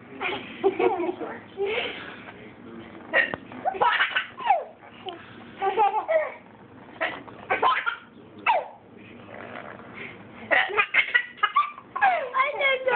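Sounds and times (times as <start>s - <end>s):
baby laughing and babbling: 3.6s - 4.8s, 5.6s - 6.4s, 10.6s - 12.9s.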